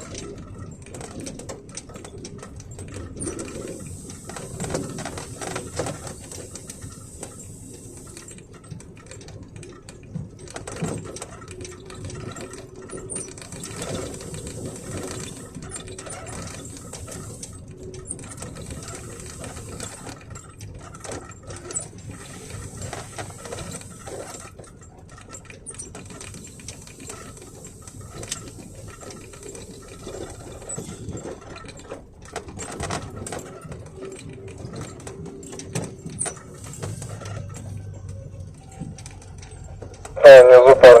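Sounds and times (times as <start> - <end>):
truck cab creaking and rattling: 0.0 - 41.0
low engine drone: 36.6 - 41.0.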